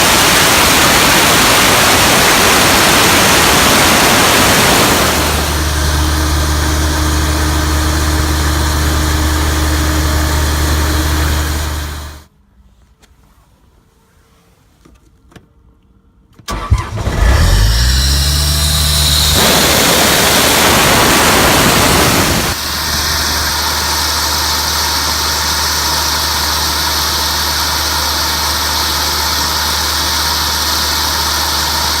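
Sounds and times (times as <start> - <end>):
loud rushing noise: 0.0 - 11.8, 18.1 - 24.0
diesel engine starting and running: 0.0 - 12.3, 16.4 - 32.0.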